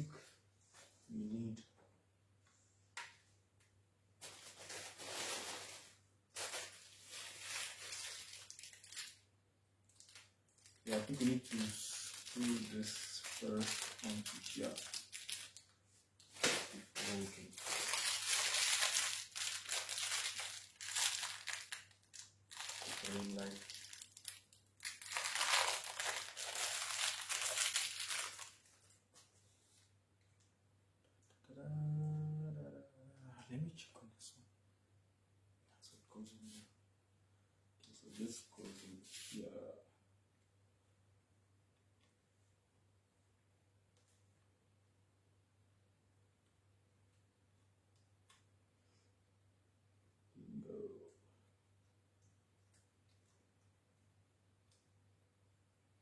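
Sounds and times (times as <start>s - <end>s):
packaging crinkling and rustling: 4.2s - 9.2s, 9.9s - 29.0s.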